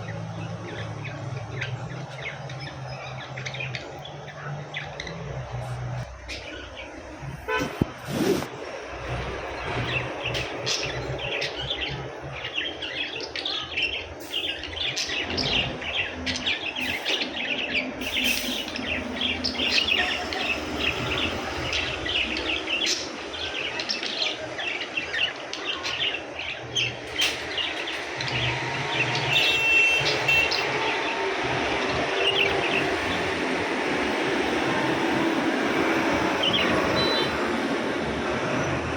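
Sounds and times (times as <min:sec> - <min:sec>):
budgerigars chattering: 0:00.0 - 0:35.1.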